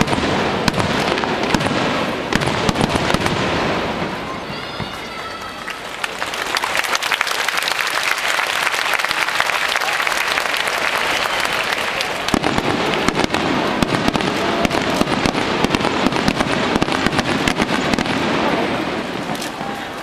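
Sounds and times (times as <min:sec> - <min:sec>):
firework booms: 0:00.0 - 0:05.0, 0:12.2 - 0:20.0
fireworks crackling: 0:00.0 - 0:20.0.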